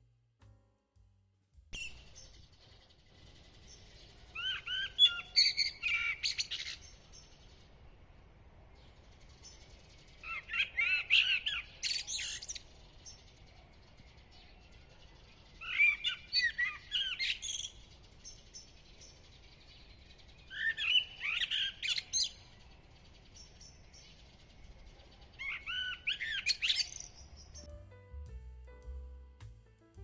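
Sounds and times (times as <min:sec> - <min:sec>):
blackbird singing: 0:03.6 - 0:07.4, 0:15.5 - 0:22.6, 0:23.2 - 0:27.7.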